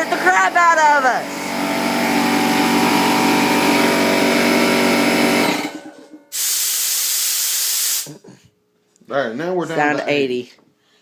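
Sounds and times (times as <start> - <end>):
air compressor running: 0.0 - 8.3
compressed air hissing: 6.3 - 8.2.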